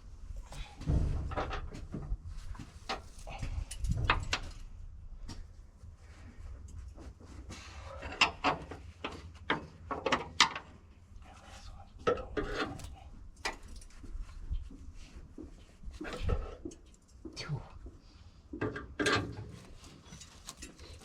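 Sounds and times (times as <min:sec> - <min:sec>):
knocks clanks and scraping: 0:00.2 - 0:04.7, 0:07.0 - 0:11.0, 0:11.7 - 0:17.2, 0:18.5 - 0:21.0.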